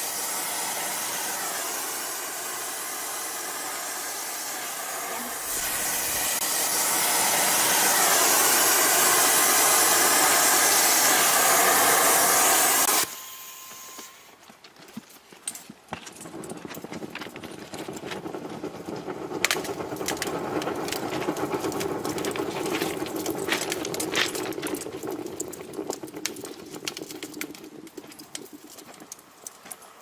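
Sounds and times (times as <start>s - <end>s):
thermite burning roar: 0.0s - 13.0s, 16.2s - 30.0s
sharp crackles and pops: 14.7s - 30.0s.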